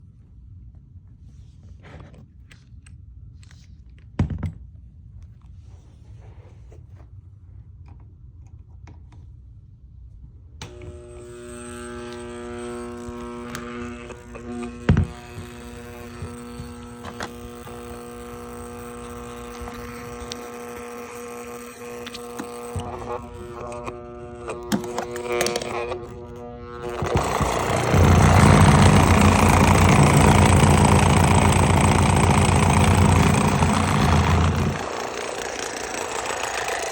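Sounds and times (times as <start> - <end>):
electric motor humming: 10.6 - 36.9.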